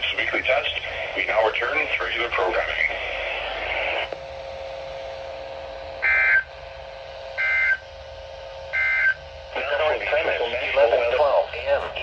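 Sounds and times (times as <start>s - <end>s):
radio static: 0.0s - 4.2s, 8.6s - 12.0s
faint steady hum: 0.0s - 12.0s.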